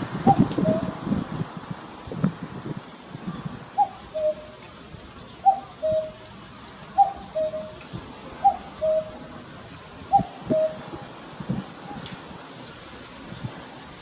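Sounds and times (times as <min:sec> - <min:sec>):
cuckoo two-note call: 0:05.4 - 0:06.3, 0:07.0 - 0:07.8, 0:08.4 - 0:09.3, 0:10.1 - 0:10.9.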